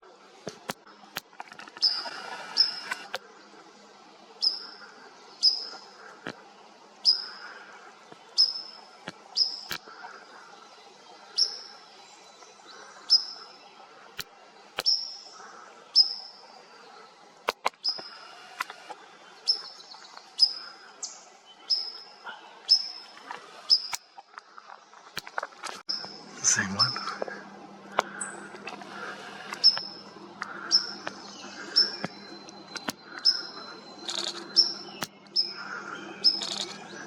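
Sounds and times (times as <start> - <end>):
small bird high call: 1.8 - 3.1, 30.6 - 36.9
sharp clicks: 32.0 - 33.0.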